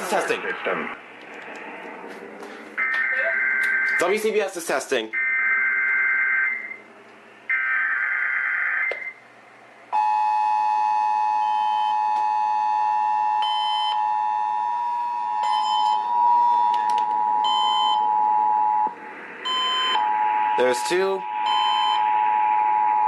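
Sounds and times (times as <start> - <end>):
screechy data tones: 19.5 - 23.0
two-tone attention signal: 21.4 - 22.1.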